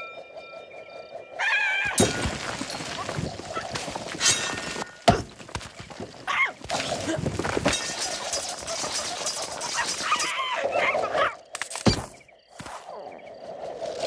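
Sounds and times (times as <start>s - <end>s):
squawk-like cry: 1.4s - 2.0s.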